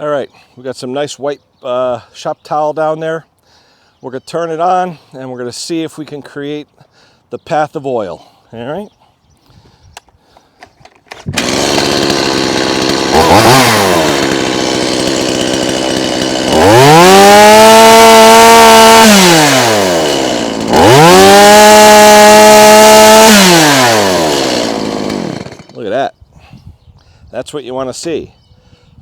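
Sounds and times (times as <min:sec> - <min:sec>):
chainsaw starting and revving: 0:10.8 - 0:25.9.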